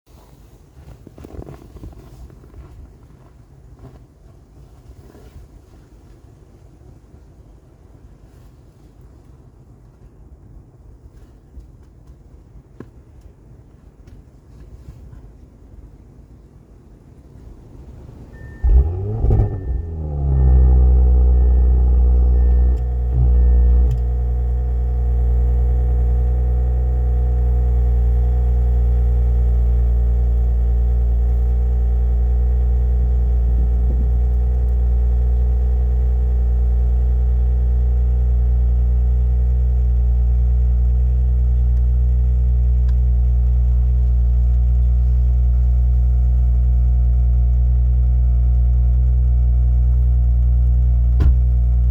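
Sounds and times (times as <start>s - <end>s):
car engine starting and idling: 17.0s - 51.9s.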